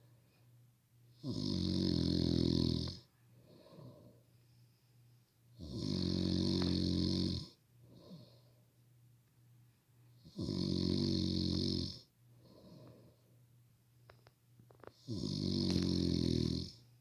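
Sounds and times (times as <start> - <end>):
person snoring loudly: 1.2 - 3.0, 5.6 - 7.6, 10.3 - 12.0, 15.0 - 16.8
soft breathing: 3.1 - 5.3, 7.8 - 8.8, 12.3 - 13.5.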